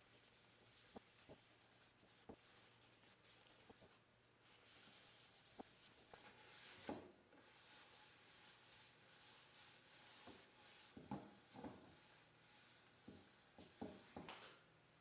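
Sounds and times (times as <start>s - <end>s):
soft scratchy rustle: 0.0s - 11.0s.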